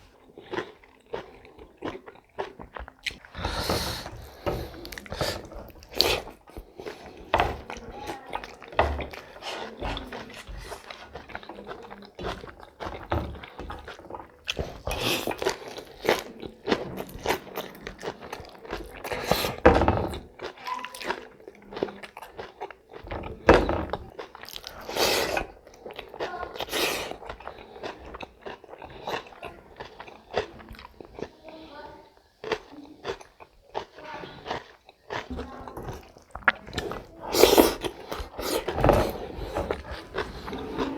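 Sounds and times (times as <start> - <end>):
person crunching and chewing: 0.0 - 31.3, 32.4 - 40.9
wet mouth sounds: 24.4 - 31.3, 32.4 - 40.9.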